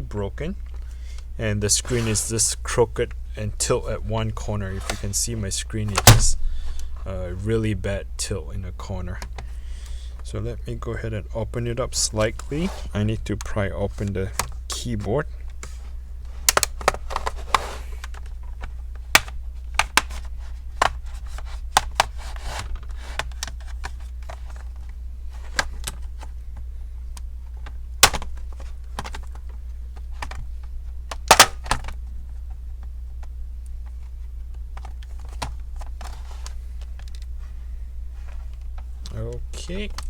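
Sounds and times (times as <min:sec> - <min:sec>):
steady low hum: 0:00.0 - 0:40.0
plastic clips clicking and snapping: 0:19.2 - 0:20.2, 0:31.1 - 0:32.0.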